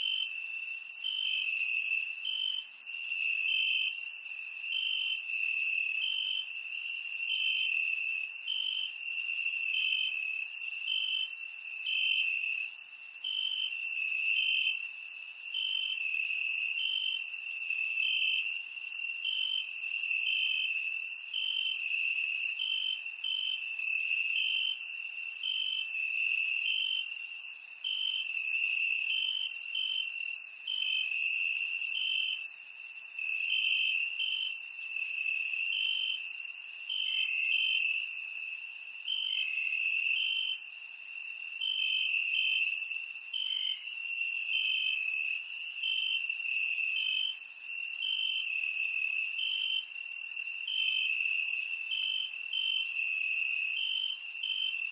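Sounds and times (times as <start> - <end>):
cricket chirps: 0.0 - 54.9.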